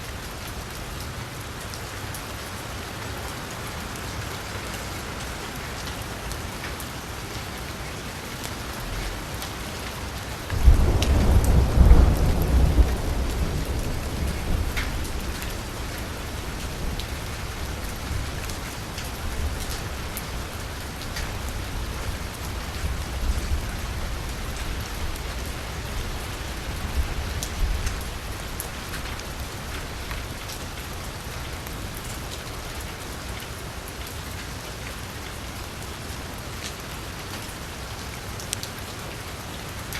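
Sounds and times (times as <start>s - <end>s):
gentle rain on a street: 0.0s - 39.9s
thunder rumbling: 10.5s - 20.5s.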